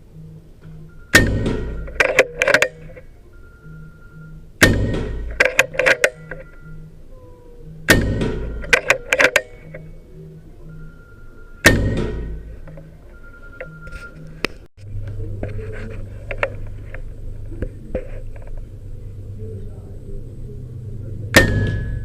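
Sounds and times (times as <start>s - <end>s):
air rifle shots: 4.6s - 6.3s, 7.9s - 9.6s.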